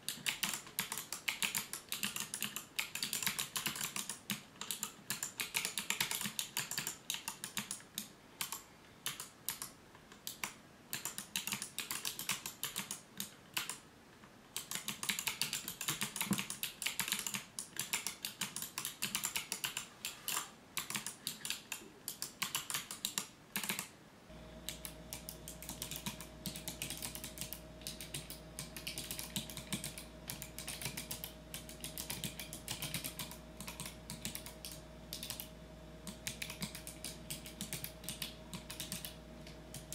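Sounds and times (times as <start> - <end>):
rapid keyboard typing clicks: 0.0 - 13.8, 14.5 - 23.9, 24.6 - 39.9
faint steady tone: 24.2 - 39.9
steady low hum: 24.2 - 39.9.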